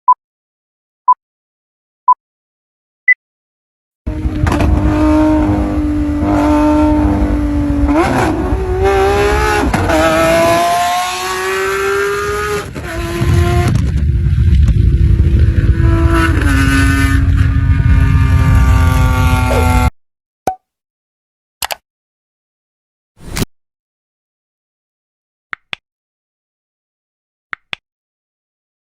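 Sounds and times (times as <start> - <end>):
car engine accelerating: 4.1 - 19.9.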